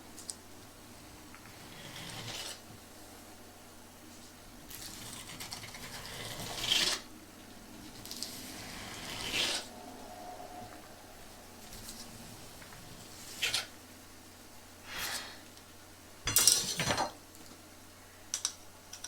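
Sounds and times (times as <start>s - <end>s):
scratchy rubbing strokes: 1.5s - 2.6s, 8.2s - 9.9s.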